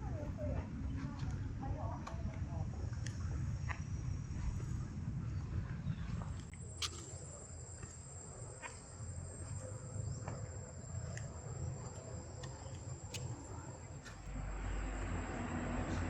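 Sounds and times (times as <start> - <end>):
insects droning: 5.9 - 16.0.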